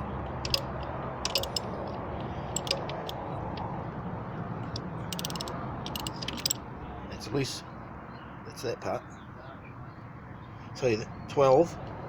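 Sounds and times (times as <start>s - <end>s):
socket wrench clicking: 0.0s - 3.7s, 4.6s - 6.6s.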